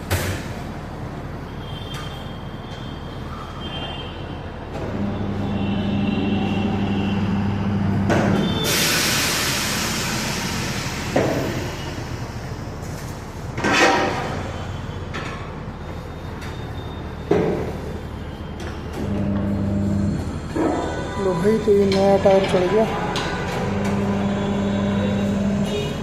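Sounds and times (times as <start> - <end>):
compressed air hissing: 8.5 - 12.4
motor humming: 23.4 - 26.0.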